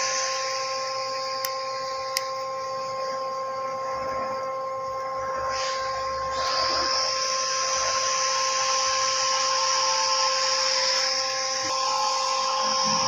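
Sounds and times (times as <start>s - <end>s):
lathe whining: 0.0s - 13.0s.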